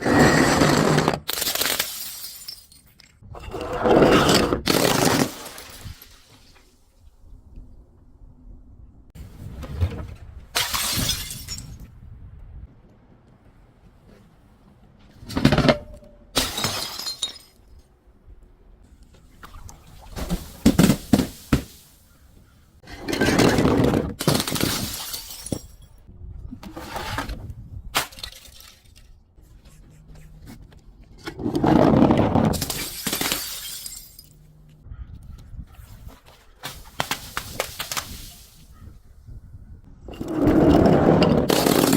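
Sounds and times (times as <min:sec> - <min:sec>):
glass bottles breaking and crunching: 0:01.0 - 0:06.5, 0:10.6 - 0:11.8, 0:15.4 - 0:17.8, 0:20.1 - 0:22.0, 0:23.0 - 0:26.0, 0:28.0 - 0:29.1, 0:32.4 - 0:34.5, 0:36.7 - 0:38.6, 0:41.2 - 0:41.9.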